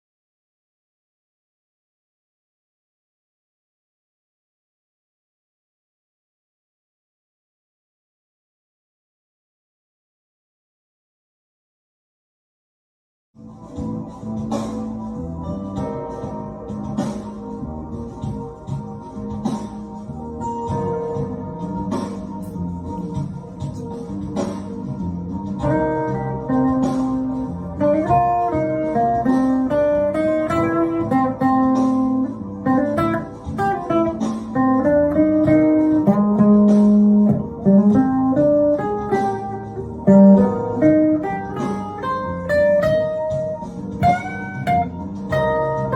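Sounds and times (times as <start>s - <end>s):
fusion backing track: 13.4s - 45.9s
electric guitar improvising: 25.4s - 45.9s.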